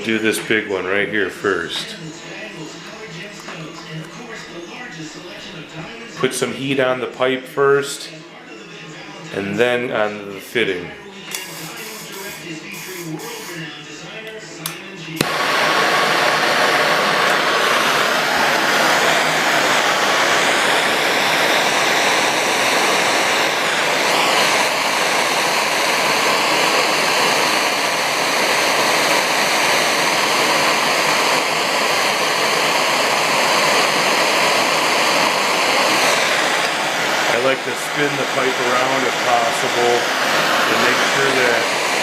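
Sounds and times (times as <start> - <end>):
gas torch flame hissing: 11.2 - 13.7, 14.6 - 42.0.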